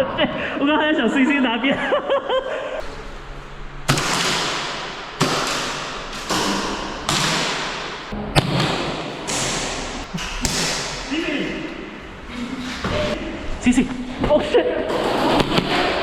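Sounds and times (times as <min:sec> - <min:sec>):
airsoft gun shots: 0:03.9 - 0:11.2.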